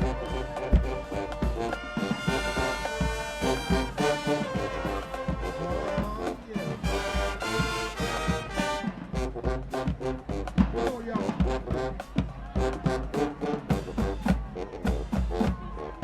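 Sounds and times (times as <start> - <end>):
bass drum and percussion beat: 0.0 - 16.0
marching band brass chords: 0.0 - 16.0.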